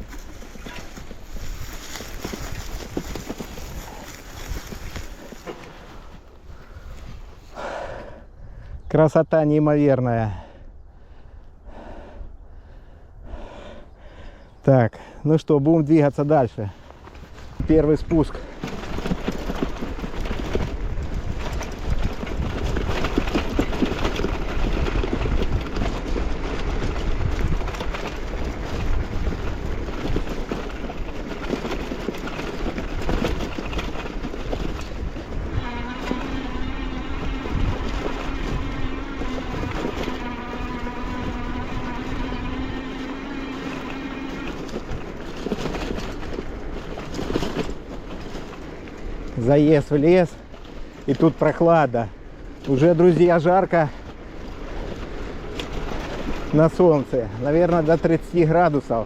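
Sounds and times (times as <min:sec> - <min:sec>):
bicycle rattling over bumps: 0:00.0 - 0:08.6, 0:15.8 - 0:59.0.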